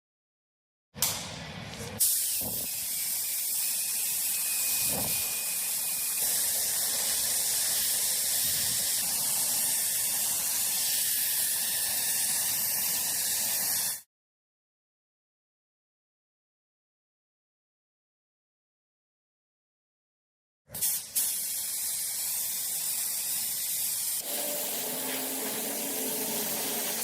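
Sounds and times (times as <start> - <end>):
airbrush hissing: 2.0 - 14.0, 20.8 - 27.0.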